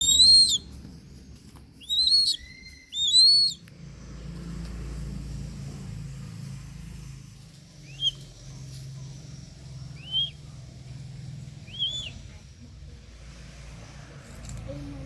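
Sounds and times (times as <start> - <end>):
bird chirping: 0.0 - 3.7, 7.8 - 8.5, 9.2 - 12.4.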